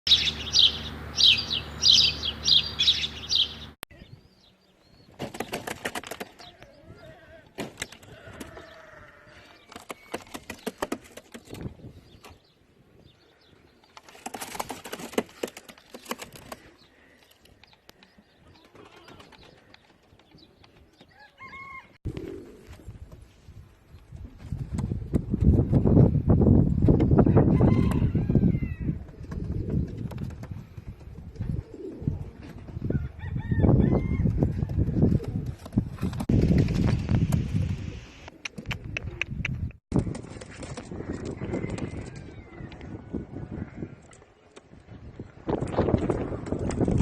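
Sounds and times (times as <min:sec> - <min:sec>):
birds chirping: 0:00.1 - 0:21.8
pigeon wings flapping: 0:05.2 - 0:06.5, 0:09.7 - 0:11.7, 0:14.0 - 0:16.7, 0:34.9 - 0:37.8
pigeons cooing: 0:21.6 - 0:22.9, 0:28.7 - 0:32.9.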